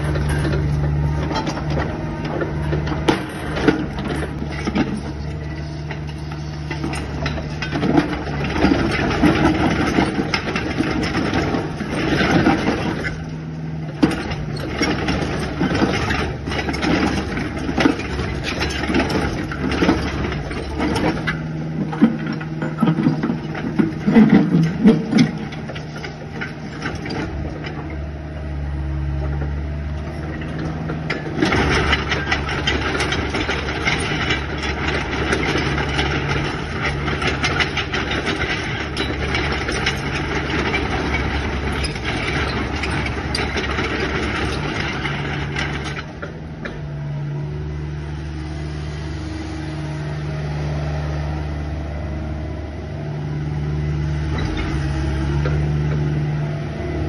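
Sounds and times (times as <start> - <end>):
rattling and clatter: 0.0 - 46.9
excavator diesel engine running: 0.0 - 57.0.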